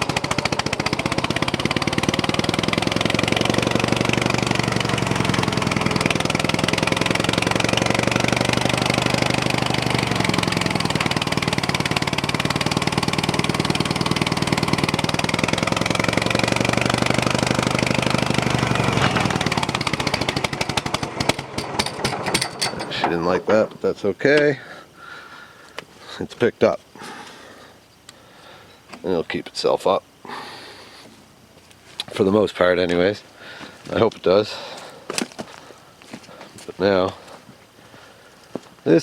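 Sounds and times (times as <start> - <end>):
tractor engine misfiring: 0.0 - 24.7.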